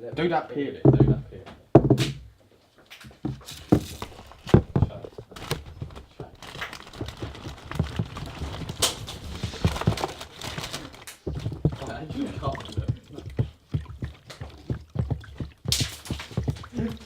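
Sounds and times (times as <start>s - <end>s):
sharp snaps and knocks: 0.9s - 17.0s
crackling tearing rustle: 5.2s - 11.4s.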